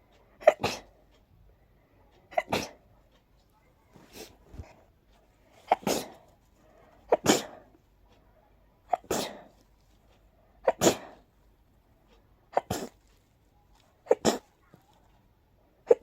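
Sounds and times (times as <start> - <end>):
person sneezing: 5.7 - 6.2, 8.9 - 9.5.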